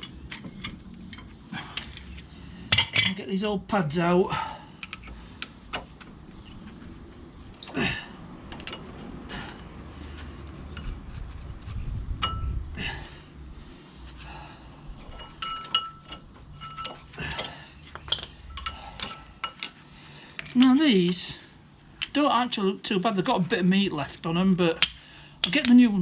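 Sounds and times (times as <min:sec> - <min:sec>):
metallic clicks and clinks: 0:15.0 - 0:19.8.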